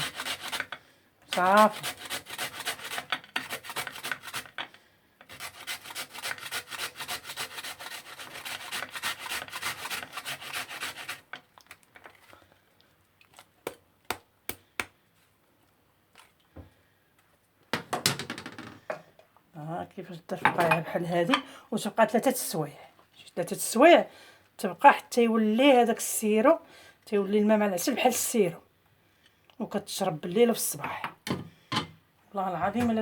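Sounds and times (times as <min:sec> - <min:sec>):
knife scraping turnip: 0:00.0 - 0:04.7, 0:05.3 - 0:11.4
dishes clattering: 0:20.4 - 0:21.5.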